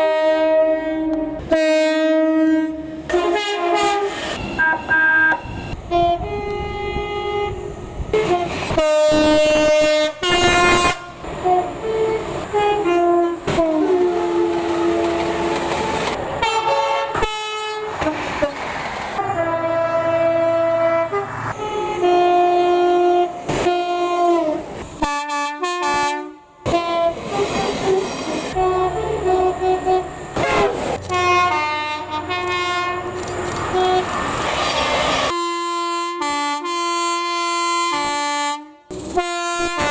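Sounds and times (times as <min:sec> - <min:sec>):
train two-tone horn: 0:00.0 - 0:18.6, 0:19.2 - 0:39.9.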